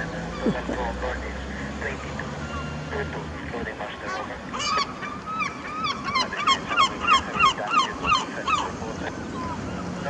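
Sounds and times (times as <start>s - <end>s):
gull calling: 0.3s - 0.9s, 4.1s - 9.6s.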